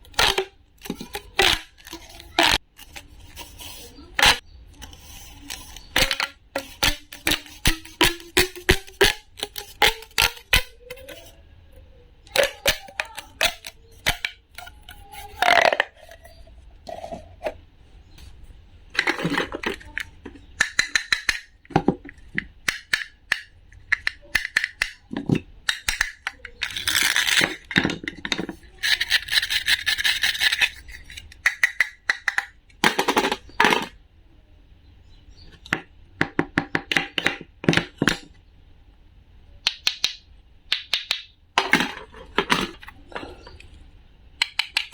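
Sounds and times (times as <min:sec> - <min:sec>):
clicks and taps of small objects: 0:12.3 - 0:16.4, 0:19.0 - 0:34.0, 0:35.5 - 0:38.4, 0:39.6 - 0:43.7, 0:44.4 - 0:44.9
scraping or rustling: 0:12.6 - 0:20.5.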